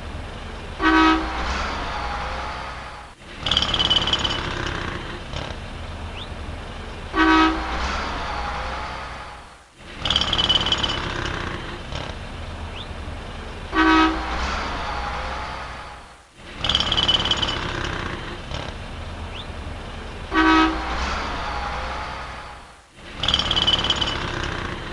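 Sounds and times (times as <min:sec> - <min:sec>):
city street traffic: 0:00.0 - 0:24.9
car horn honk: 0:00.8 - 0:01.6, 0:07.1 - 0:08.8, 0:13.7 - 0:14.5, 0:20.3 - 0:22.1.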